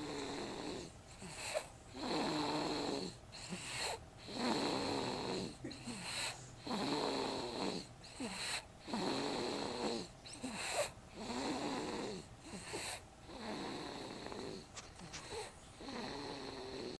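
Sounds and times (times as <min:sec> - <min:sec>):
person snoring: 0:00.0 - 0:17.0.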